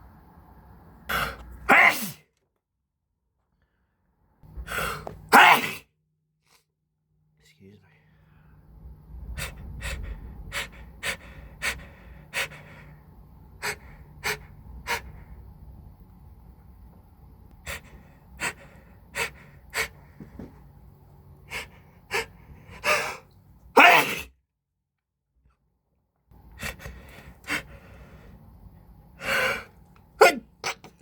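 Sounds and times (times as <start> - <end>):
loud sneeze: 1.1 - 2.3, 4.7 - 5.9, 22.2 - 24.4, 29.6 - 31.0
sharp gasping inhales: 4.6 - 5.1, 21.5 - 23.3.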